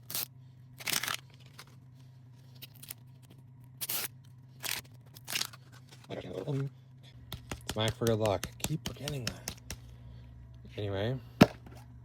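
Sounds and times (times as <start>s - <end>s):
faint steady hum: 0.0s - 12.0s
plastic wrapper rustling and tearing: 0.8s - 1.8s, 4.6s - 6.1s.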